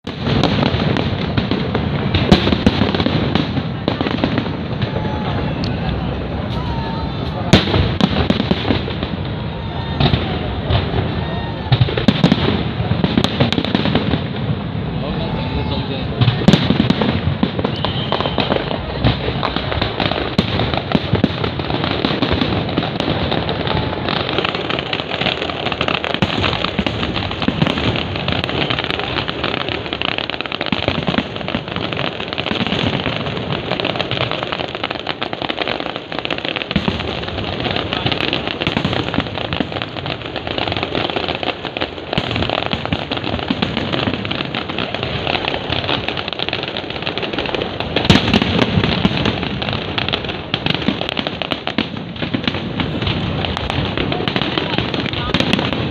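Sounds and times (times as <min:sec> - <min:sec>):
fireworks bangs and crackling: 0:00.0 - 0:55.9.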